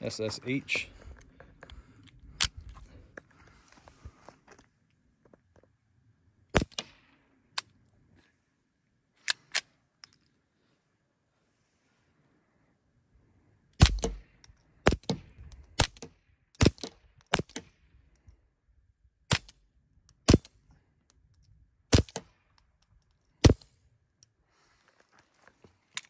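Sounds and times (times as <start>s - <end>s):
suppressed pistol shots: 13.8s - 15.2s, 15.8s - 17.7s, 19.3s - 19.6s, 20.3s - 20.5s, 21.9s - 22.3s.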